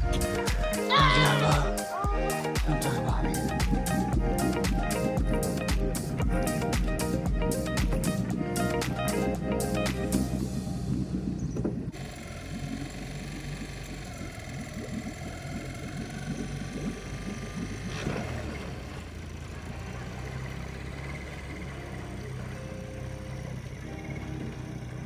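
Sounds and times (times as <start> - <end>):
music playing: 0.0 - 11.9
motor engine running: 0.0 - 25.0.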